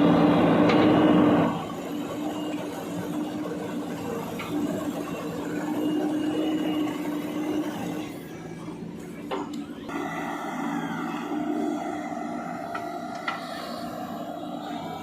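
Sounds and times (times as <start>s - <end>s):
diesel engine droning under load: 9.8s - 15.0s.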